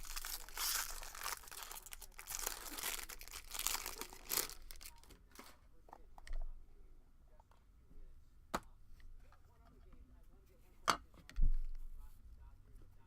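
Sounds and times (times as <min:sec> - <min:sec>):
foil wrappers tearing and crinkling: 0:00.0 - 0:05.1.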